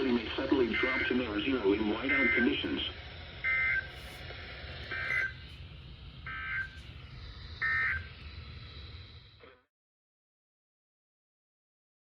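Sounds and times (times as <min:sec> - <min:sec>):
broadcast hiss and hum: 0:00.0 - 0:09.7
buzzy digital data bursts: 0:06.2 - 0:09.5.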